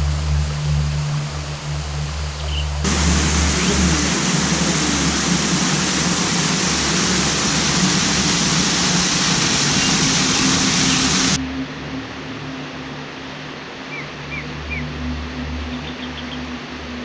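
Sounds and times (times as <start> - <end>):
waterfall rushing: 2.8 - 11.4.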